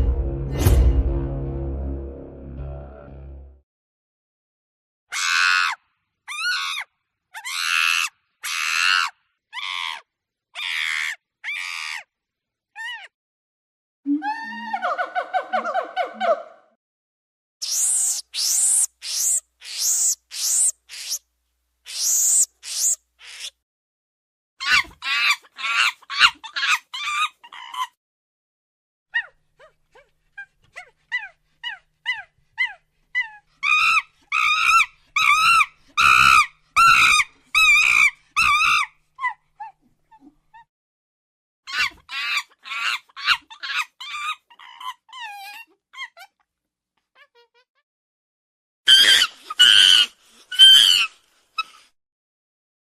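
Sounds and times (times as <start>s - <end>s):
monkey high clear calls: 5.1s - 10.0s, 10.6s - 12.1s, 17.6s - 21.2s, 21.9s - 23.6s, 24.6s - 27.9s, 31.1s - 39.8s, 41.7s - 46.3s, 48.9s - 51.8s
monkey screeching: 5.1s - 12.1s, 12.8s - 13.1s, 17.6s - 21.2s, 21.9s - 23.6s, 24.6s - 28.0s, 30.4s - 40.7s, 41.7s - 46.4s, 48.9s - 51.8s.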